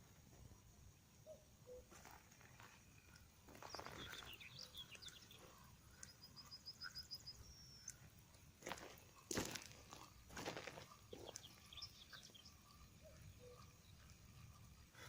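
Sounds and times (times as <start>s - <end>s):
small birds chirping: 0.1s - 15.0s.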